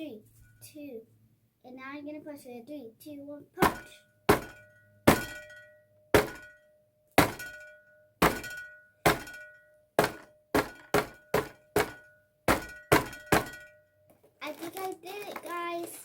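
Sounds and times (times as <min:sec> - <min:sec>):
fist knocking on cardboard door: 0:03.6 - 0:04.5.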